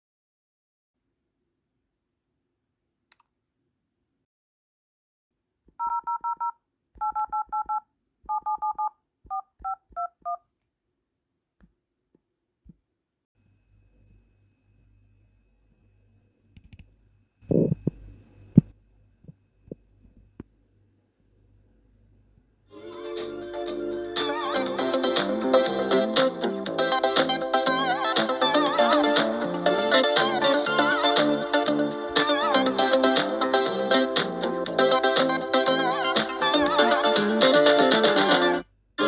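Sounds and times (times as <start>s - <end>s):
phone keypad touch tones: 5.8s - 10.4s.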